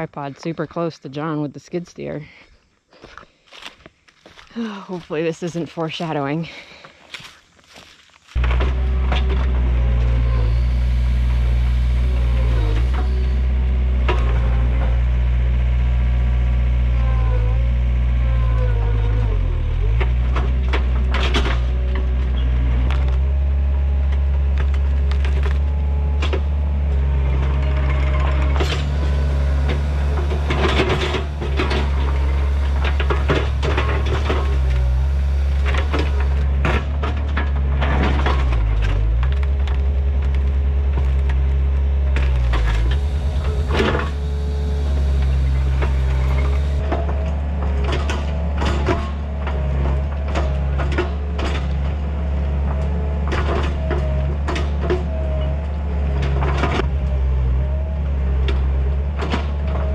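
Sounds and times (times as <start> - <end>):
diesel engine running under load: 4.3 - 59.9
wood cracking and splintering: 7.1 - 13.4, 19.4 - 52.0.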